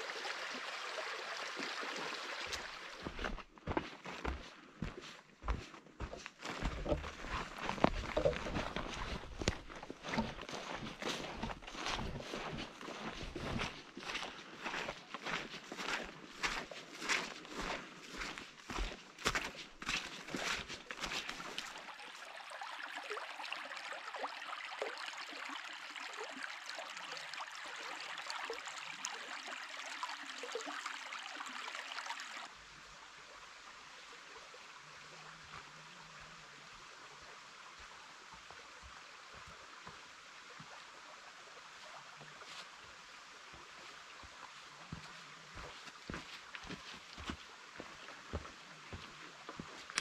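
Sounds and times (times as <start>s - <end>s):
small stream trickling: 0.0s - 50.0s.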